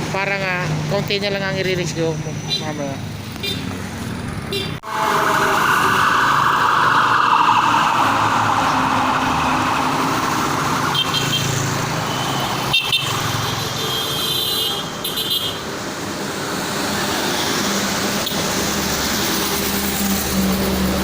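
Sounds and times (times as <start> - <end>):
vehicle engine and road noise: 0.0 - 21.0
short high horn tones: 4.8 - 6.3
siren-like falling tone: 4.8 - 11.7.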